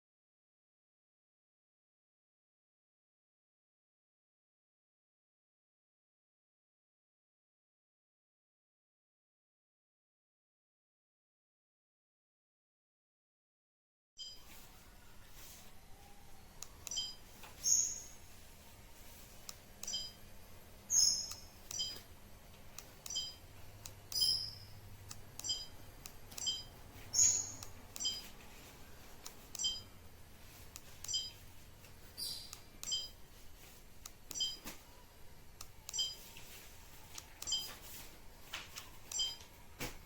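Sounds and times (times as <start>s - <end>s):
short electronic beeps: 14.2s - 14.6s, 16.8s - 18.2s, 19.8s - 20.2s, 20.9s - 22.0s, 23.0s - 23.5s, 25.4s - 28.3s, 29.5s - 30.0s, 31.0s - 31.4s, 32.2s - 33.2s, 34.3s - 34.7s, 35.8s - 36.4s, 37.4s - 37.8s, 39.1s - 39.4s
faint background hum and hiss: 14.2s - 40.0s.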